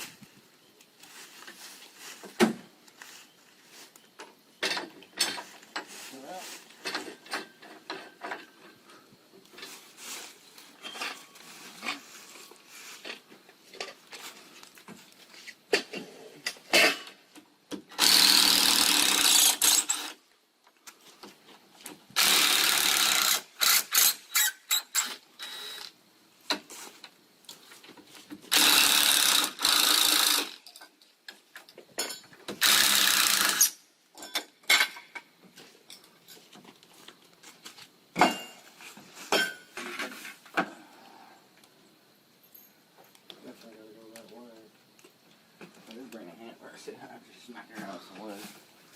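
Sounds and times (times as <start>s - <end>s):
drill driving screws into wood: 17.8s - 20.2s, 22.2s - 26.0s, 28.5s - 30.7s, 32.5s - 33.8s.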